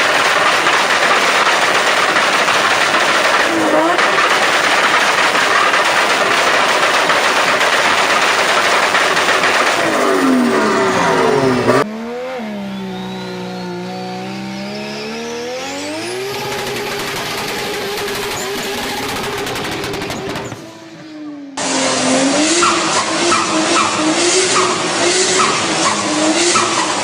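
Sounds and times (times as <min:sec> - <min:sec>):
car engine revving: 0:00.0 - 0:27.0
turbo whistle: 0:12.4 - 0:14.4.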